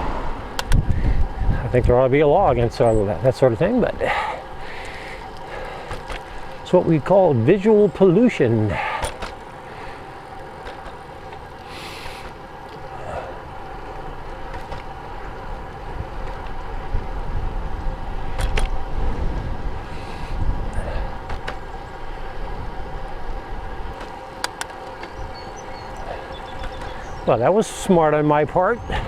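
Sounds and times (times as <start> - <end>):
wind rushing over microphone: 0.0 - 7.0, 15.0 - 29.0
tyre and road noise: 0.0 - 29.0.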